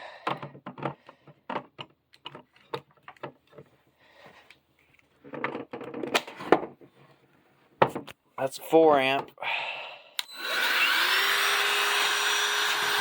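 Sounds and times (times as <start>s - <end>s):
hand vacuum plastic clicks and knocks: 0.2s - 3.6s.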